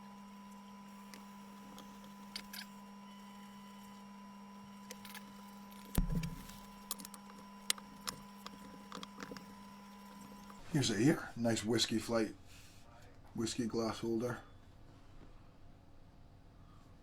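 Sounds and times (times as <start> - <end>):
electrical hum: 0.0 - 17.0
heavy thump: 6.0 - 6.5.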